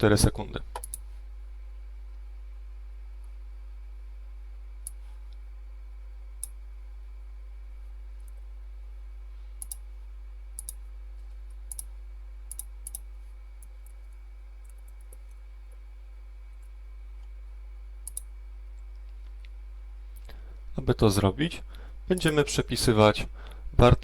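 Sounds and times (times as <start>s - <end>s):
low electrical hum: 0.0s - 24.0s
computer mouse clicking: 0.8s - 1.0s, 6.4s - 6.6s, 9.6s - 9.8s, 10.6s - 10.8s, 11.6s - 11.9s, 12.5s - 14.0s, 18.0s - 19.6s.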